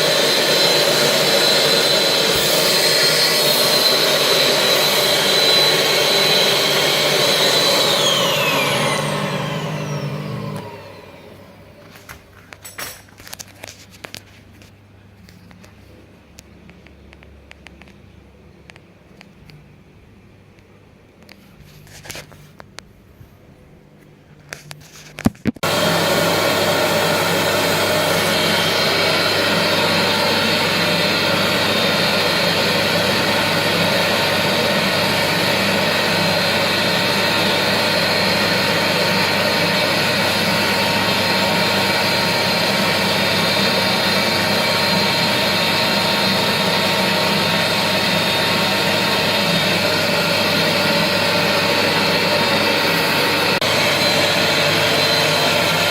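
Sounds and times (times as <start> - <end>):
carpet cleaner motor humming: 0.0 - 12.0, 25.6 - 55.9.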